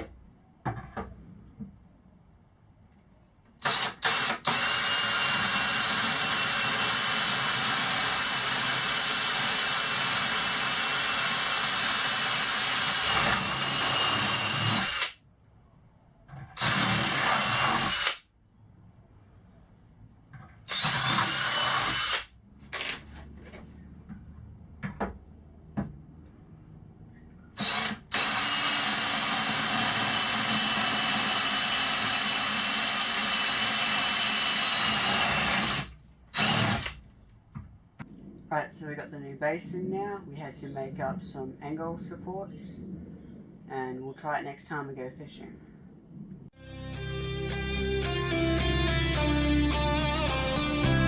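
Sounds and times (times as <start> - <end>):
electric power drill drilling: 3.6 - 15.2, 16.6 - 18.2, 20.6 - 23.0, 27.6 - 37.0.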